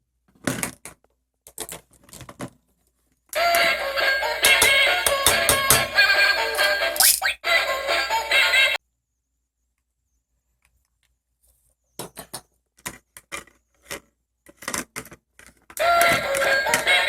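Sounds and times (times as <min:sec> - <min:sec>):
background music: 0:03.4 - 0:08.8, 0:15.8 - 0:17.0.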